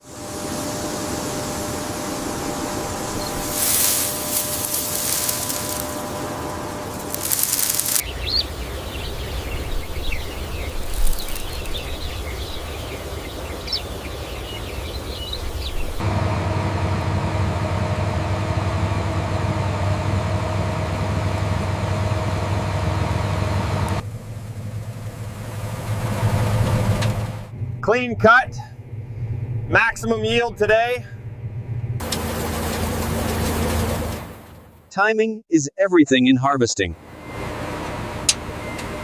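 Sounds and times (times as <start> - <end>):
machine whirring with hiss: 0.0 - 8.0
low rumble: 0.0 - 34.8
combine harvester engine droning: 0.0 - 34.9, 36.9 - 39.0
birds chirping: 2.9 - 16.0.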